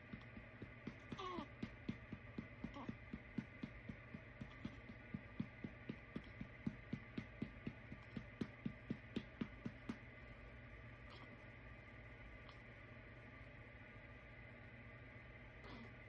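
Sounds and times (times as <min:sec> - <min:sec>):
hand patting baby's back: 0:00.0 - 0:10.1.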